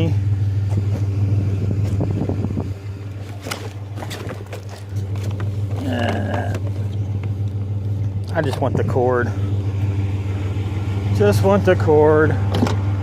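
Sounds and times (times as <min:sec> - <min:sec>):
truck engine idling: 0:00.0 - 0:13.0
knocks and rattles of items handled: 0:03.2 - 0:08.7.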